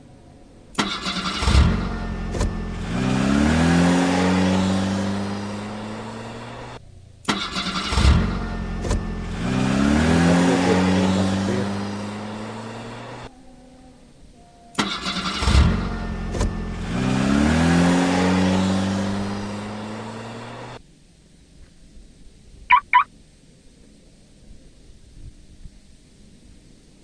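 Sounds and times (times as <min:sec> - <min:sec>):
car engine starting and revving: 0:00.7 - 0:13.3, 0:14.7 - 0:20.8.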